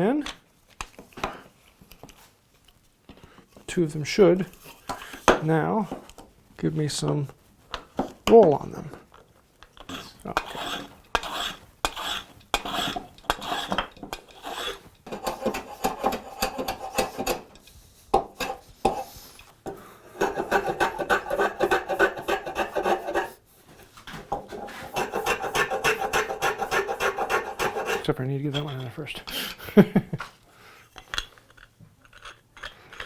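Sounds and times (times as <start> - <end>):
clamp threads rasping: 9.9 - 17.6, 18.2 - 23.4, 24.5 - 28.1.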